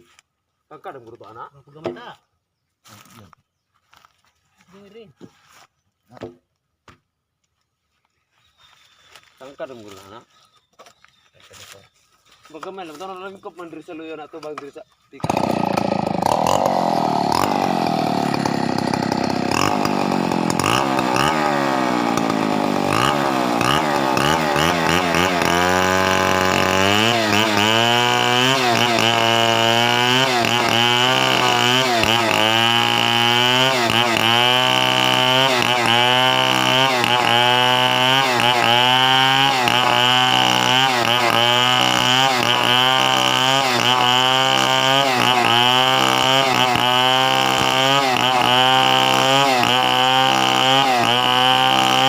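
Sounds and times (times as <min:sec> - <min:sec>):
chainsaw engine revving: 0:15.2 - 0:52.0.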